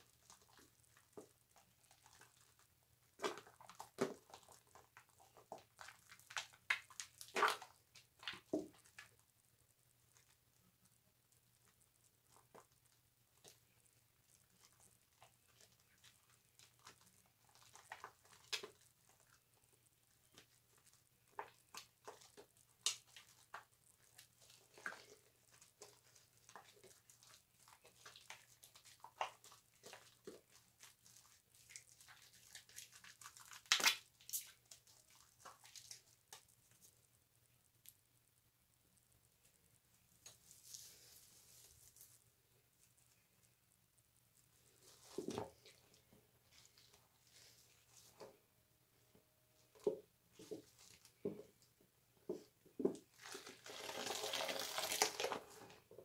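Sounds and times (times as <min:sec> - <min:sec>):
wet soap lathering squishes: 0:00.0 - 0:37.0, 0:52.9 - 0:56.0.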